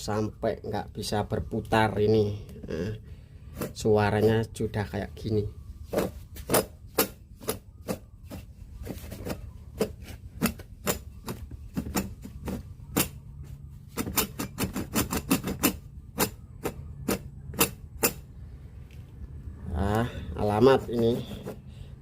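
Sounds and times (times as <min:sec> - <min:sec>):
compressor knocking and clattering: 0:05.9 - 0:18.3.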